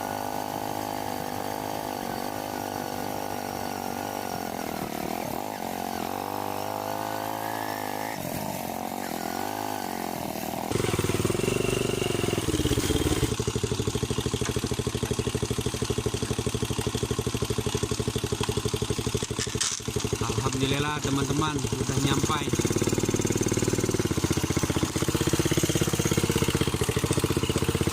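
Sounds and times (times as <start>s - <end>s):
motorcycle engine revving: 0.0s - 27.9s
engine idling: 10.0s - 27.9s.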